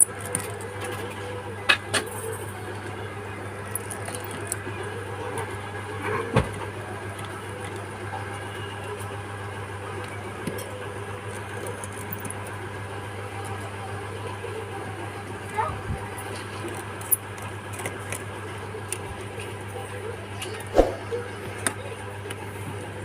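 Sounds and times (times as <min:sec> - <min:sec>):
steady low hum: 0:20.7 - 0:21.3.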